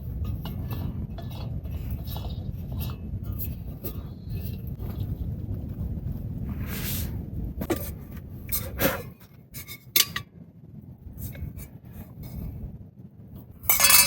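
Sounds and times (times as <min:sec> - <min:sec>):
wind buffeting microphone: 0:00.0 - 0:14.0
cookware and utensils clinking: 0:09.6 - 0:10.3, 0:13.7 - 0:14.0.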